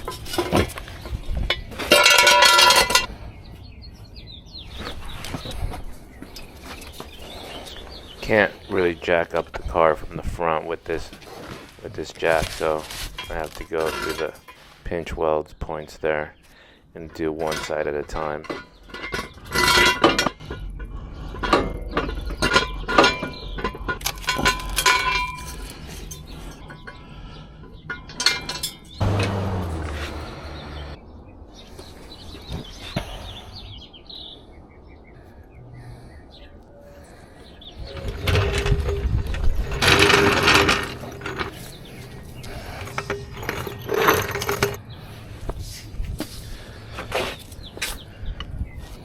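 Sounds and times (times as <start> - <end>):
metal clinks and clanks: 1.5 - 3.1, 13.1 - 14.7, 17.1 - 27.0, 27.7 - 29.0, 37.9 - 44.8.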